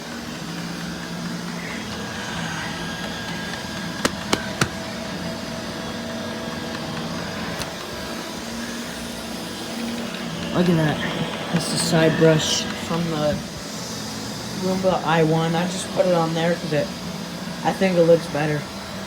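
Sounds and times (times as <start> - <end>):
robot vacuum motor hum: 0.0 - 19.0
sharp clicks: 0.5 - 5.1.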